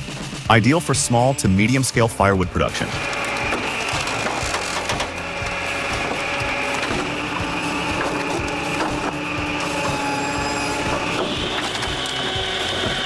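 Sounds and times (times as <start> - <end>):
machine hum with high whine: 2.8 - 13.0
wood pieces tumbling: 3.0 - 13.0
wood splitting and cracking: 3.0 - 13.0.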